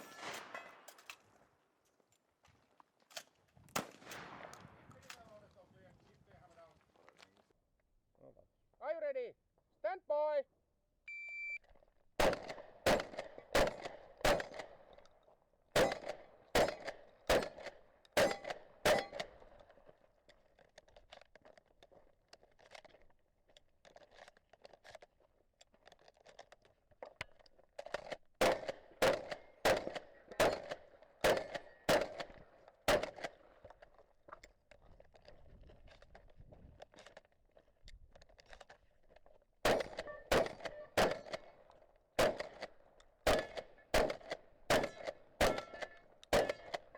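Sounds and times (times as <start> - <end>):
shotgun shots: 0.0 - 1.0, 3.7 - 5.4, 12.2 - 14.8, 15.8 - 19.4, 28.4 - 33.4, 39.6 - 41.5, 42.2 - 46.9
faint clicks and clatter: 19.5 - 28.3, 32.2 - 39.5
shotgun action pumping: 39.6 - 41.5, 42.2 - 46.9.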